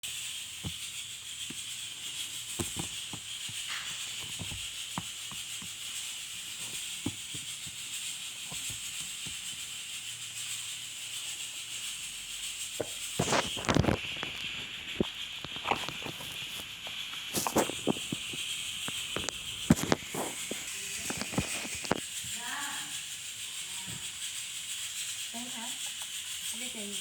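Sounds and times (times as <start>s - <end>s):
steady hiss: 0.0s - 27.0s
packaging rustling: 0.6s - 9.8s, 12.8s - 22.0s
handling clicks and taps: 1.4s - 9.7s.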